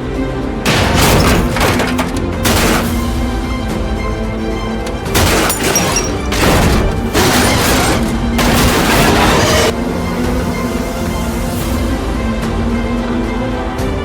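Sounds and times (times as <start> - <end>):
background music: 0.0 - 14.0
crash and explosion effects: 0.7 - 3.4, 4.9 - 9.8.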